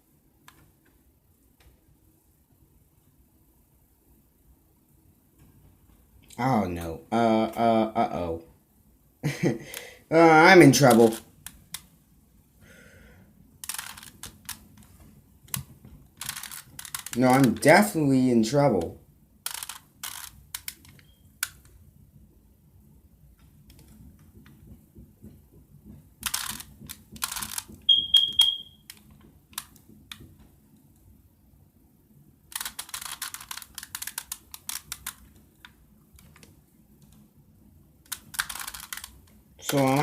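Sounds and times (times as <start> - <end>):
plastic cube clicking: 13.6 - 14.9, 15.5 - 17.6, 19.4 - 21.7, 26.2 - 28.3, 28.9 - 30.3, 32.5 - 36.5, 38.1 - 40.0.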